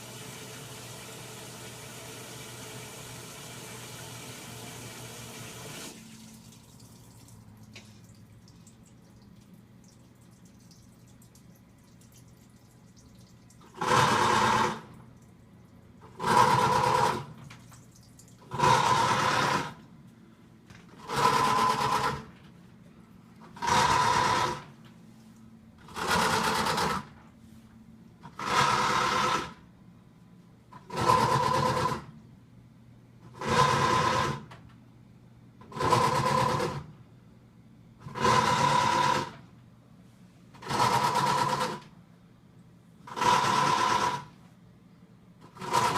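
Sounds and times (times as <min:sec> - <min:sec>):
washing machine grinding: 0:13.6 - 0:15.0, 0:16.0 - 0:17.4, 0:18.4 - 0:19.9, 0:20.9 - 0:22.4, 0:23.4 - 0:24.8, 0:25.8 - 0:27.2, 0:28.2 - 0:29.6, 0:30.8 - 0:32.1, 0:33.3 - 0:34.5, 0:35.6 - 0:36.9, 0:38.0 - 0:39.4, 0:40.6 - 0:41.9, 0:43.0 - 0:44.4, 0:45.4 - 0:45.9.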